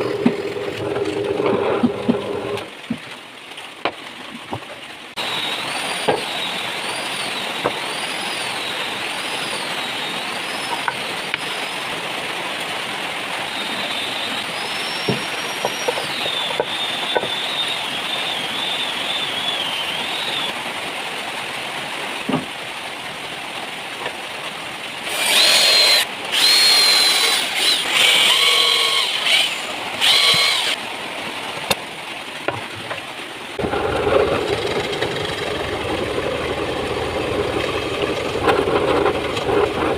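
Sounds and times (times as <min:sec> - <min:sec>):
drum sander whining: 0:00.0 - 0:02.7, 0:25.1 - 0:30.8, 0:33.6 - 0:39.9.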